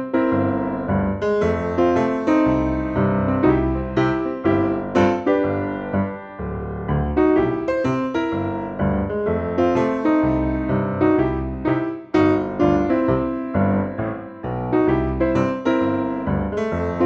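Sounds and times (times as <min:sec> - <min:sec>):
piano playing chords and melody: 0:00.0 - 0:17.0.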